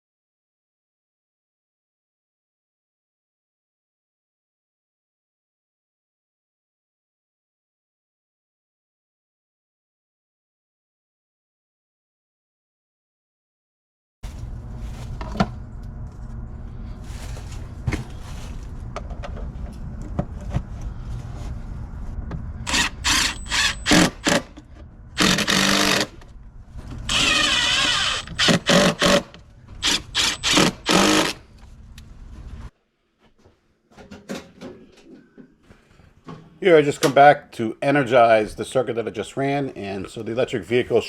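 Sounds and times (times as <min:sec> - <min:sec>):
steady low hum: 0:14.2 - 0:32.7
power drill bursts: 0:22.7 - 0:24.6, 0:25.2 - 0:26.2, 0:27.1 - 0:31.4.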